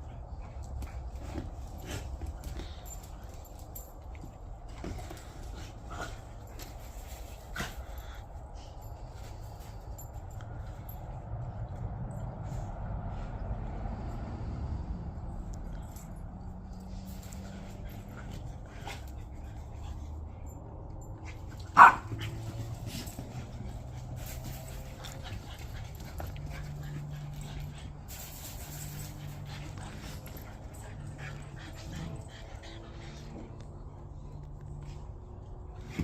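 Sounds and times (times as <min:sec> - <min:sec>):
dog barking: 0:21.8 - 0:22.2.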